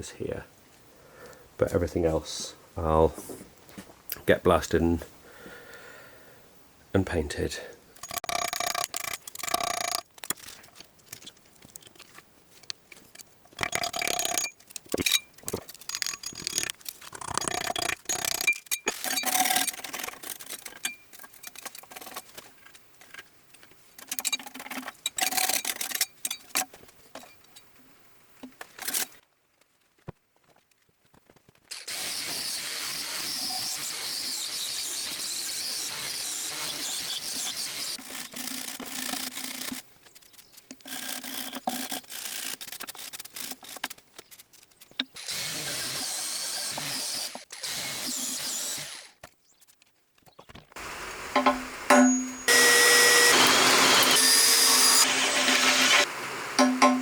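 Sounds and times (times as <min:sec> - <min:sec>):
metal parts clinking and scraping: 0:08.0 - 0:12.0, 0:13.6 - 0:23.2.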